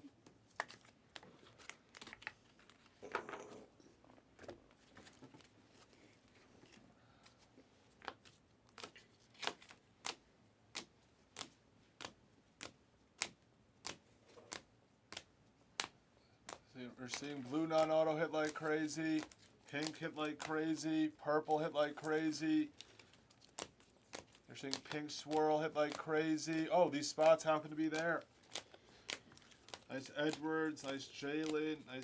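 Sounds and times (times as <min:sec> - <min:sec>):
cards and wrappers rustling: 0:00.3 - 0:15.3, 0:16.4 - 0:32.0
wrapper tearing crinkle: 0:21.5 - 0:32.0.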